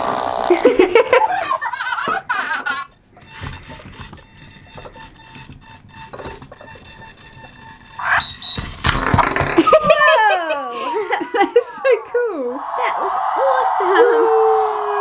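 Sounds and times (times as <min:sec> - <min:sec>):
toy robot clicks and knocks: 0:02.0 - 0:09.6
soft short beeps: 0:03.2 - 0:08.6
high warbling chirp: 0:07.9 - 0:08.6.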